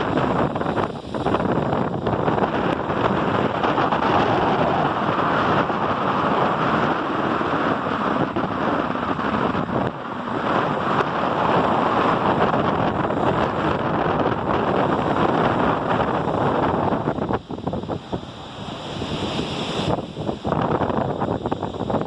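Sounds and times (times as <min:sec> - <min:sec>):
waves breaking on beach: 0:00.0 - 0:22.0
wind buffeting microphone: 0:00.0 - 0:22.0.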